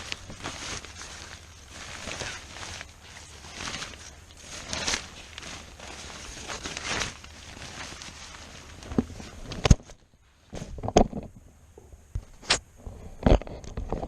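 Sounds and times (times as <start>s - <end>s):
tarp rustling: 0.0s - 10.9s.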